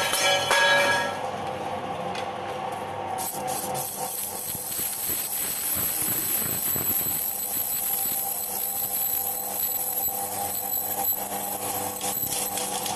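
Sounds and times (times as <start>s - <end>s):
lathe machine running: 0.6s - 12.9s
high-pitched ringing whine of cut: 3.2s - 12.9s.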